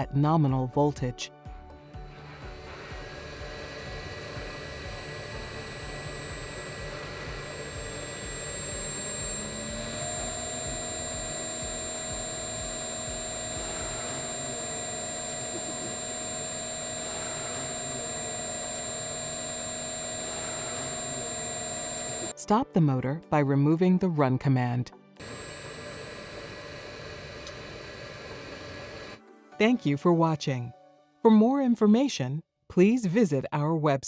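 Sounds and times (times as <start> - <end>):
electric motor humming with whine: 2.0 - 22.3, 25.2 - 29.2.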